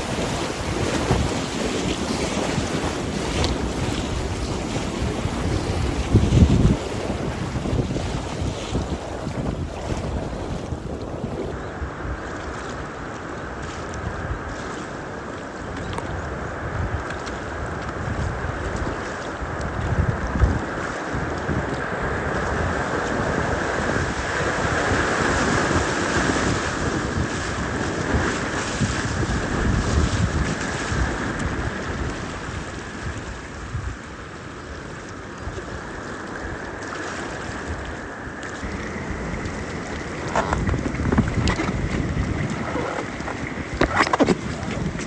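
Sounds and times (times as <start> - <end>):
river water rushing: 0.0 - 11.5
wind buffeting microphone: 0.0 - 11.5, 37.6 - 45.0.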